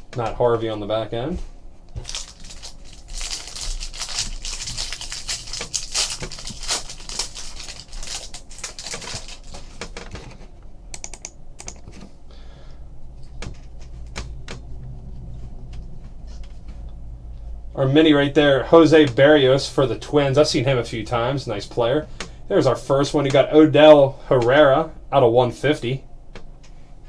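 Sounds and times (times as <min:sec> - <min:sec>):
trading cards clicking and snapping: 0:02.0 - 0:10.4.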